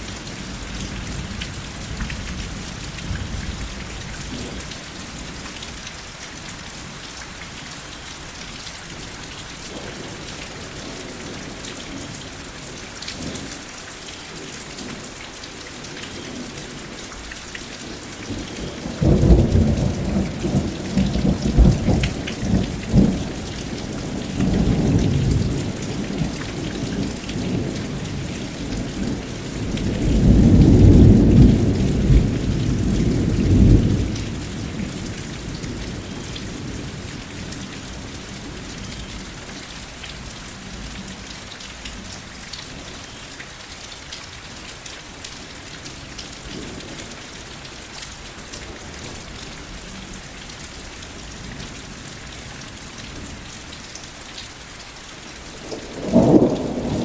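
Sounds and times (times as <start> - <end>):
steady rain falling: 0.0 - 57.0
rolling thunder: 18.3 - 37.5, 55.6 - 57.0.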